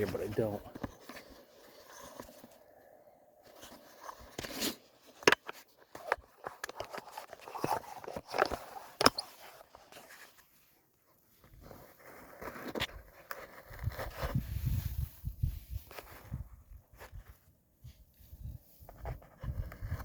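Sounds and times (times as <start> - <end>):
scraping and crunching: 3.4 - 10.5.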